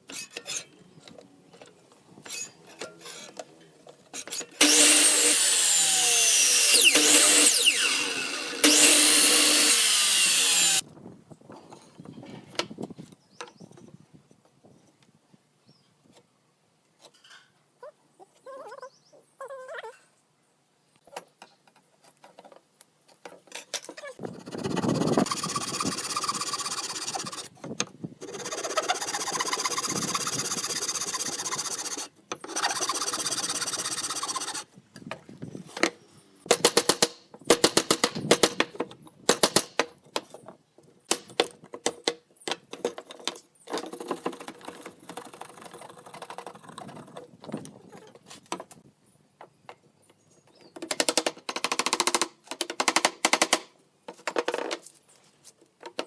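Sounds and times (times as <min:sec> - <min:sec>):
woodworking power tool running: 0:04.6 - 0:10.8.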